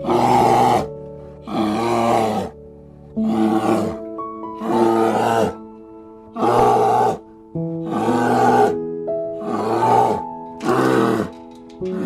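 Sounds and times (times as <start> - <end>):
big cat roaring: 0.0 - 2.6, 3.2 - 4.0, 4.6 - 5.6, 6.4 - 7.2, 7.8 - 8.8, 9.4 - 12.0
background music: 0.0 - 12.0.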